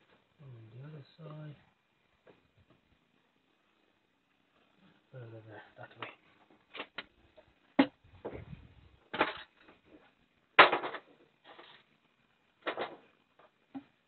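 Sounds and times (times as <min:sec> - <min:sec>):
sharp knocks of plywood pieces: 0:07.8 - 0:08.4, 0:10.6 - 0:11.2, 0:12.6 - 0:13.9.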